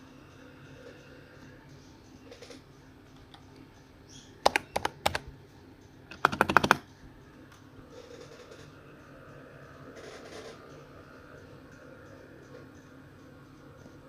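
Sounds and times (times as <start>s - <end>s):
computer keyboard typing: 4.4s - 5.3s, 6.1s - 6.9s.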